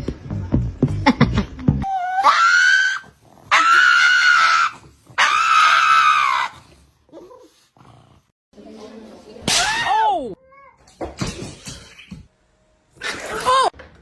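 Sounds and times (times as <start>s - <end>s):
music: 0.0s - 1.8s
high-pitched screams: 1.8s - 6.6s.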